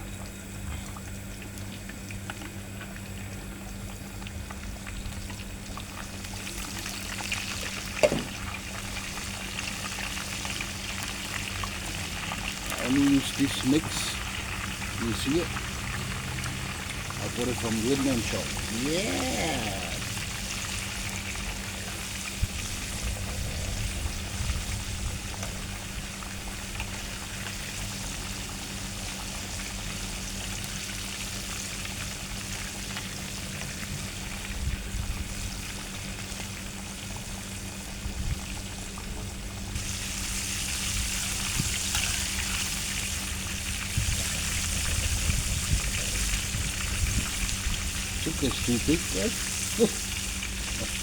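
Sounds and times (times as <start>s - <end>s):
oil sizzling: 4.4s - 23.0s, 35.5s - 51.0s.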